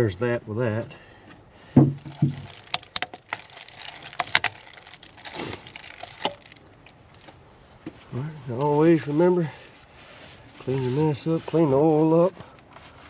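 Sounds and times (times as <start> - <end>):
small objects clicking: 2.1 - 7.0
soft rustle: 2.1 - 13.0.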